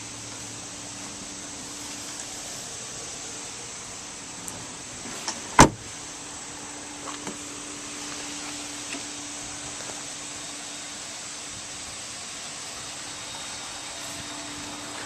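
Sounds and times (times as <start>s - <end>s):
truck panel slamming shut: 5.6s - 5.9s.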